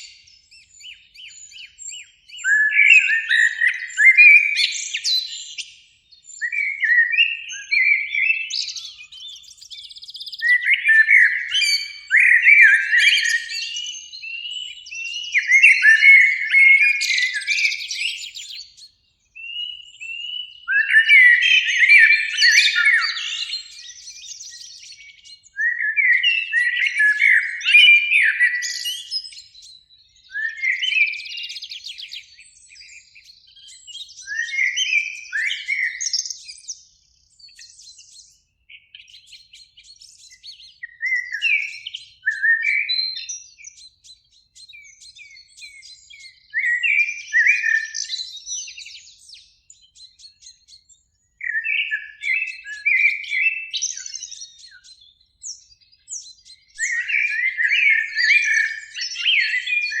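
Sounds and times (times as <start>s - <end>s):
blackbirds singing: 0.0s - 60.0s.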